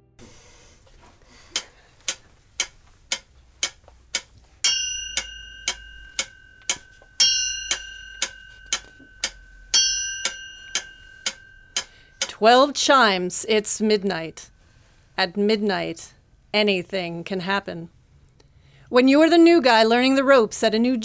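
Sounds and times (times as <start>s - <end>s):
clock ticking: 1.5s - 13.0s
clock chimes: 4.6s - 12.3s.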